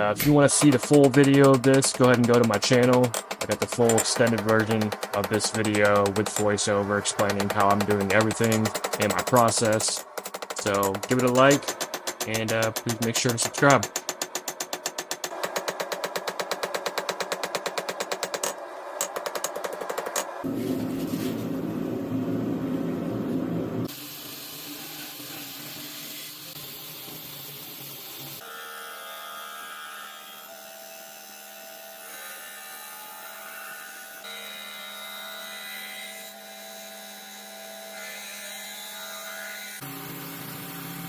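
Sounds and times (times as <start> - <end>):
power tools cutting: 0.1 - 14.4, 28.4 - 41.0.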